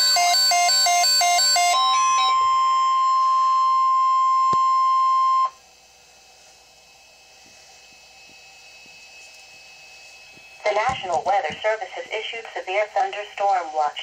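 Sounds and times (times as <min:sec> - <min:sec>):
steady warning alarm tone: 0:00.0 - 0:05.9
faint radio hiss: 0:10.6 - 0:14.0.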